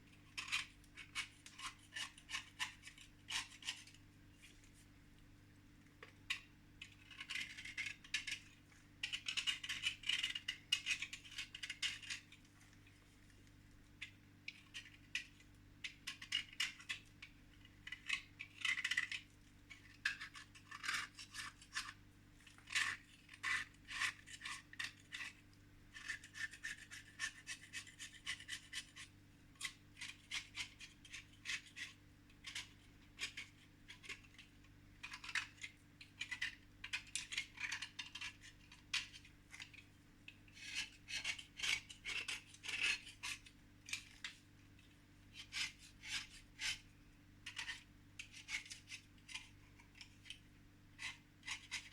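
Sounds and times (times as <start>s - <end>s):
chalk being scraped: 45.3s - 46.9s.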